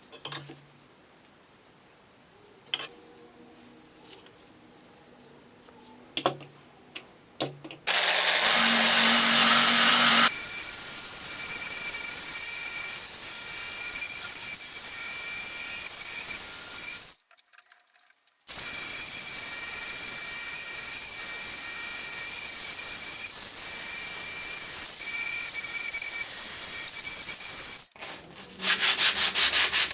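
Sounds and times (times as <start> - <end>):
electric power tool running: 7.9 - 10.6.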